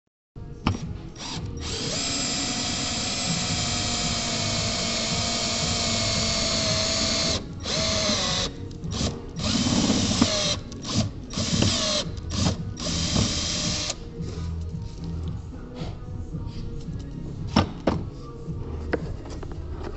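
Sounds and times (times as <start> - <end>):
electric drill boring metal: 1.2 - 14.0.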